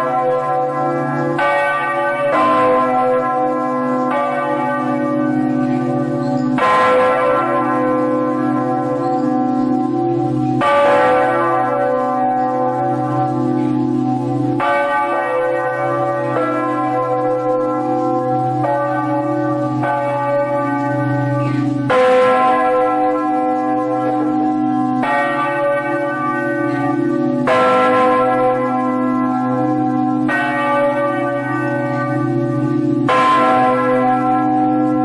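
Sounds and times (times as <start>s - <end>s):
large bells ringing: 0.0s - 35.0s.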